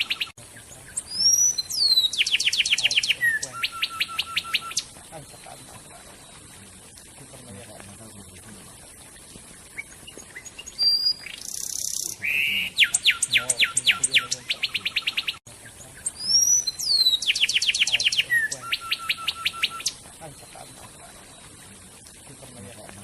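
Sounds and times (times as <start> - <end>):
songbird singing: 0.0 - 23.0.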